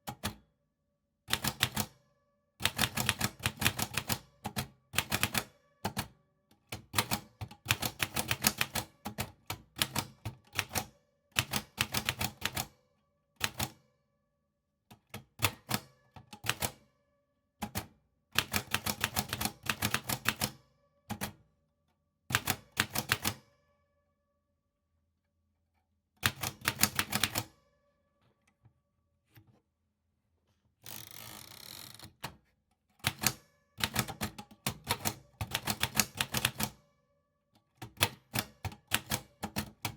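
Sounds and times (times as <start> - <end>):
typewriter keystrokes: 33.0 - 36.8, 38.0 - 39.9.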